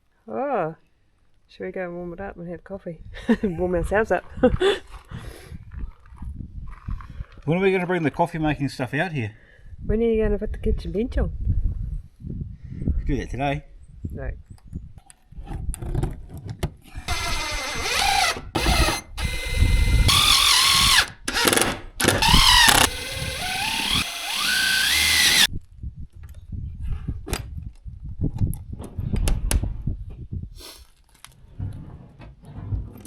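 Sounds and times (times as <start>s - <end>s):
power drill running: 17.1s - 25.5s.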